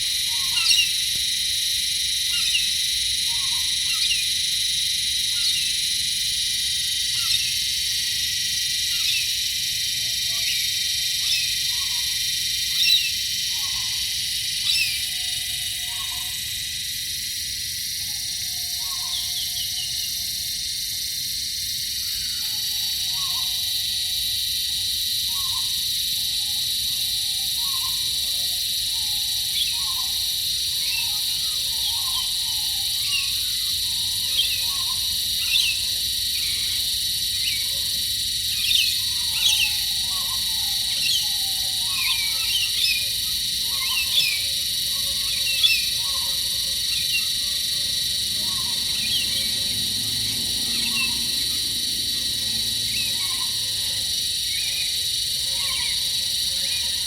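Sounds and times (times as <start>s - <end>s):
insects trilling: 0.0s - 57.0s.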